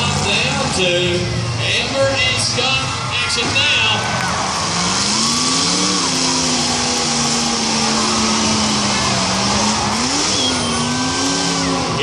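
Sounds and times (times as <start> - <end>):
car engine revving high: 4.2 - 12.0.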